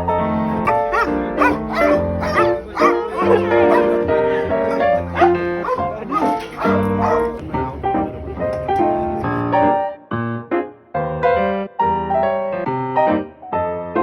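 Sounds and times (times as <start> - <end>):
background music: 0.0 - 9.5
dog whining and yipping: 0.7 - 4.0, 4.7 - 7.3.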